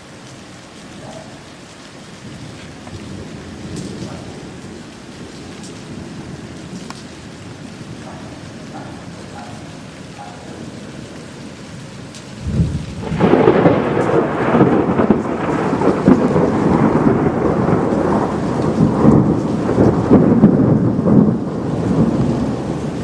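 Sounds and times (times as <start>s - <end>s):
steady rain: 0.0s - 23.0s
thunder rumbling and crackling: 2.3s - 9.3s, 12.4s - 23.0s.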